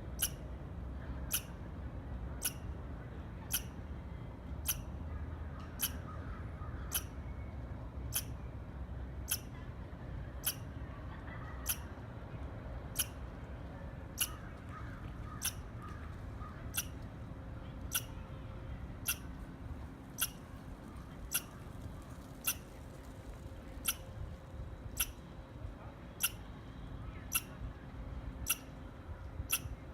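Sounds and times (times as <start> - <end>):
squirrel chirping: 0.2 - 0.4, 1.3 - 1.6, 2.4 - 2.6, 3.5 - 3.8, 4.6 - 4.9, 5.8 - 6.2, 6.9 - 7.2, 8.1 - 8.4, 9.3 - 9.5, 10.4 - 10.6, 11.6 - 11.9, 13.0 - 13.2, 14.2 - 14.4, 15.3 - 15.6, 16.6 - 17.0, 17.9 - 18.2, 19.0 - 19.3, 20.2 - 20.5, 21.2 - 21.6, 22.4 - 22.7, 23.8 - 24.0, 24.9 - 25.2, 26.2 - 26.4, 27.2 - 27.6, 28.4 - 28.8, 29.5 - 29.8.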